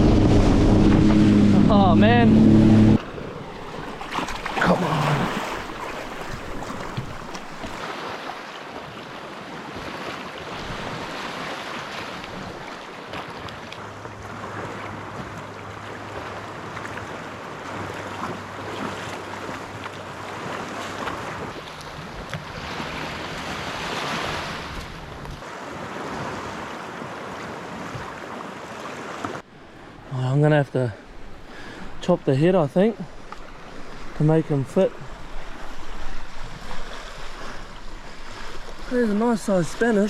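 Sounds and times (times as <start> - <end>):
wind rushing on microphone: 0.0 - 3.3
water washing around: 0.0 - 29.5, 30.5 - 40.0.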